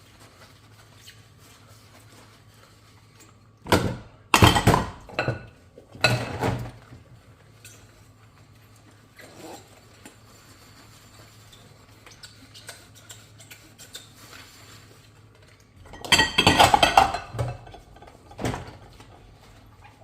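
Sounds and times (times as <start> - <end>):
dishes and cutlery clinking: 3.7 - 6.9, 15.8 - 19.5
dishes clattering: 3.7 - 6.9, 15.8 - 19.2.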